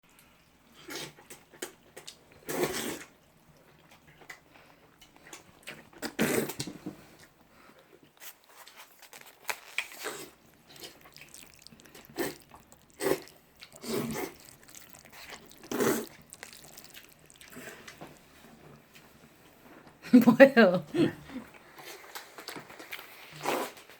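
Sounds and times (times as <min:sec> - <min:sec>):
rustling and handling noise: 0:08.1 - 0:19.6.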